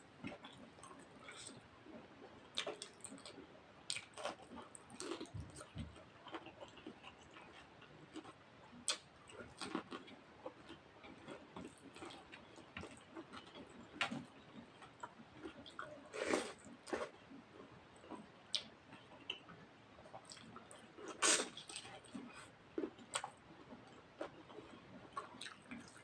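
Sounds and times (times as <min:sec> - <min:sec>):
chewing and mouth clicks: 0:02.5 - 0:17.1, 0:20.2 - 0:26.0
crunch: 0:02.6 - 0:17.2.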